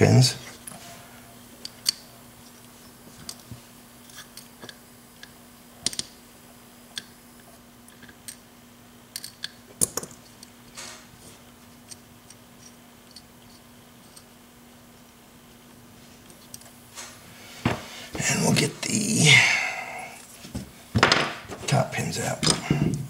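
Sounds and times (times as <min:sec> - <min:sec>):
metal lock parts clicking: 0:09.1 - 0:10.2.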